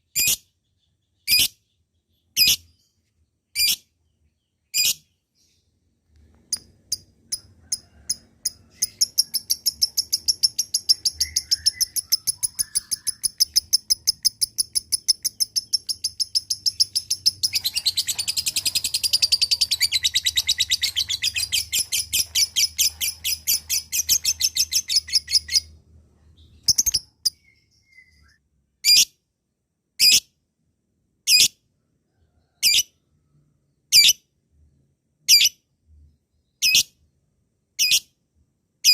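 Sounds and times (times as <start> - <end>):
lovebird chirping rapidly: 0.0 - 2.8, 3.5 - 3.9, 4.7 - 5.2, 6.4 - 25.8, 26.4 - 29.1
sharp bird chirps: 3.5 - 5.3, 6.4 - 25.8, 26.4 - 29.1.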